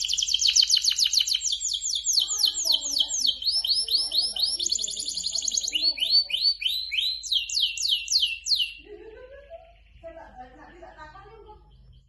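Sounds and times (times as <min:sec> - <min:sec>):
canary singing: 0:00.0 - 0:12.0.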